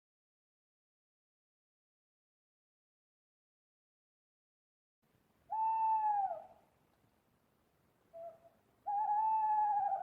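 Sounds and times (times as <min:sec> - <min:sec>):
owl hooting: 0:05.5 - 0:06.6, 0:08.1 - 0:10.0.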